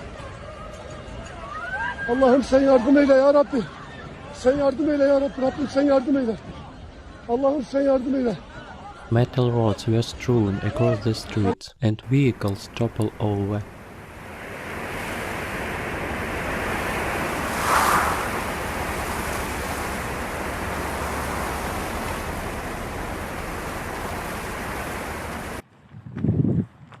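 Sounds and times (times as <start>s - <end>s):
wind buffeting microphone: 12.2s - 27.0s.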